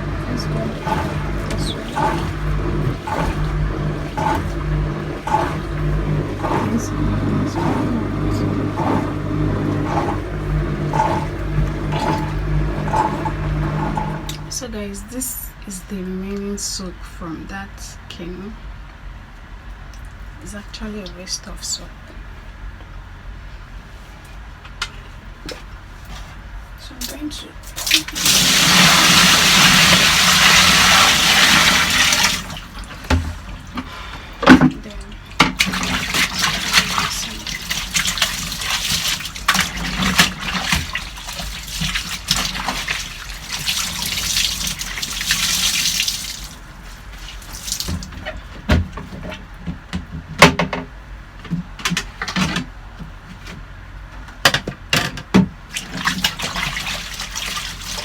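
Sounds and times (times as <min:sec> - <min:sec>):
water gushing and splashing: 0:00.0 - 0:14.7, 0:27.7 - 0:48.2, 0:55.8 - 0:58.0.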